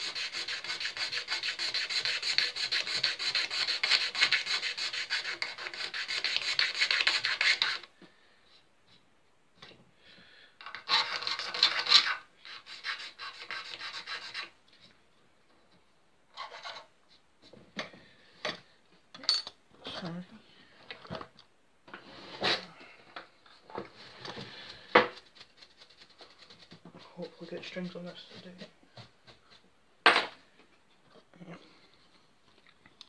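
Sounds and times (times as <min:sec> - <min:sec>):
hand sanding strokes: 0:00.0 - 0:07.9, 0:11.0 - 0:14.5.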